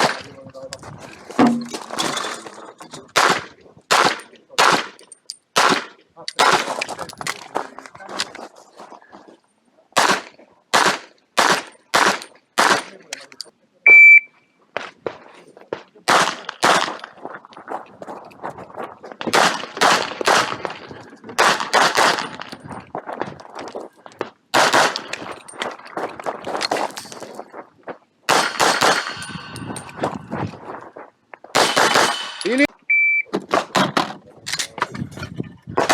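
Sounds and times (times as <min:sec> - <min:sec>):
pistol shots with echo: 0:03.2 - 0:05.0, 0:05.6 - 0:06.7, 0:10.0 - 0:13.0, 0:16.1 - 0:17.0, 0:19.3 - 0:20.7, 0:21.4 - 0:22.5, 0:24.6 - 0:25.2, 0:28.3 - 0:29.9, 0:31.6 - 0:32.6
shot timer beep: 0:13.9 - 0:14.3, 0:32.9 - 0:33.3.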